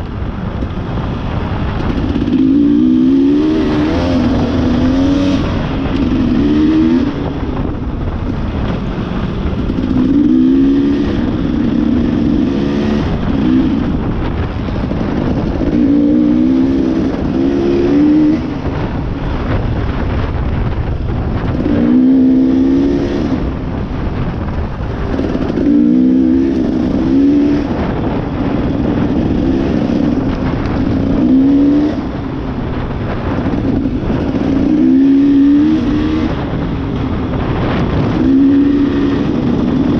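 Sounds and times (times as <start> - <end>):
steady rushing noise: 0.0 - 39.9
dirt bike engine revving: 1.3 - 20.1, 21.1 - 39.9.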